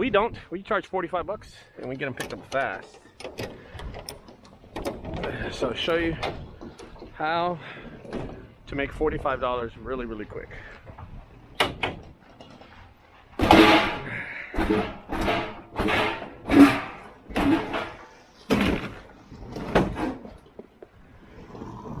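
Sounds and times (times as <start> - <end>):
refrigerator clunking and scraping: 1.9 - 8.6, 11.5 - 20.9.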